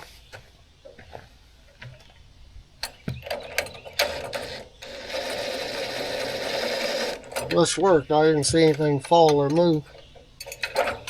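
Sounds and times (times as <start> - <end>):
metal ratchet clicking: 8.6 - 11.0.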